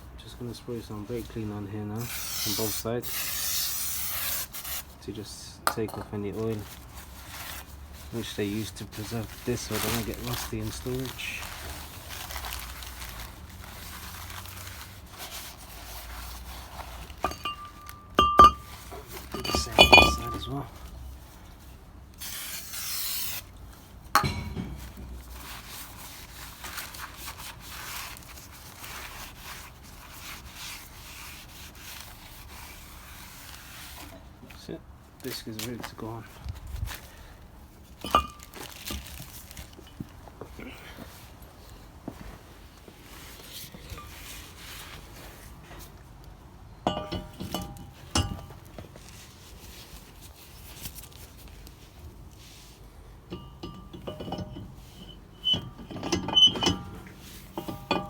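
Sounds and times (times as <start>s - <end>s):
rubbing on brake disc: 2.0s - 4.9s, 12.8s - 23.5s, 24.6s - 34.1s, 46.9s - 58.0s
metallic clank: 17.2s - 20.6s, 24.2s - 25.4s, 38.1s - 38.5s, 46.9s - 48.6s, 53.3s - 58.0s.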